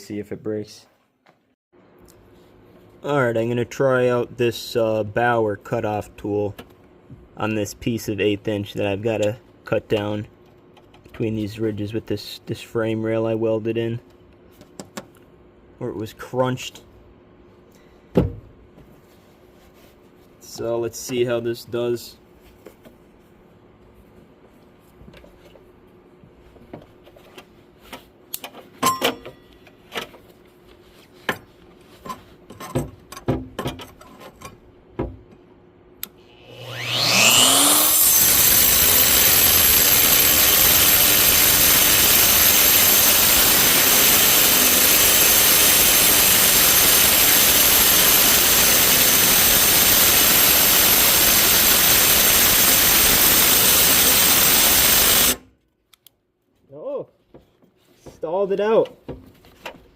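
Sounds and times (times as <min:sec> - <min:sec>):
cutoff tool grinding steel: 0:36.3 - 0:55.4.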